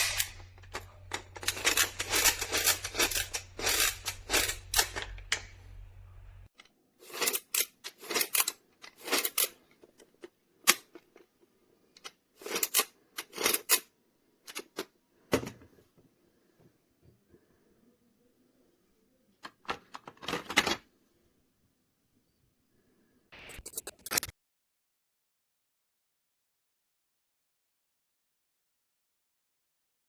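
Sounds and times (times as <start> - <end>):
plastic toy pieces clicking: 0.0 - 5.5, 6.6 - 9.6, 12.0 - 13.9
low hum: 0.0 - 6.5.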